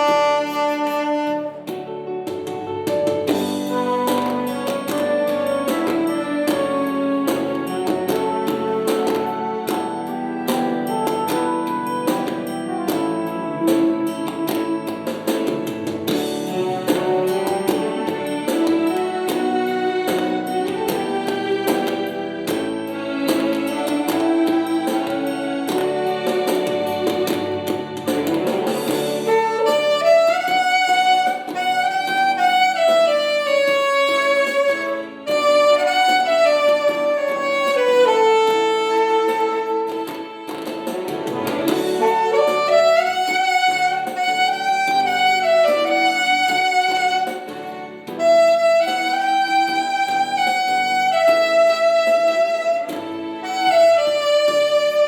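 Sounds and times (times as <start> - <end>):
saxophone slow melody: 0.0 - 2.4, 3.3 - 55.0
backing track: 0.0 - 55.0.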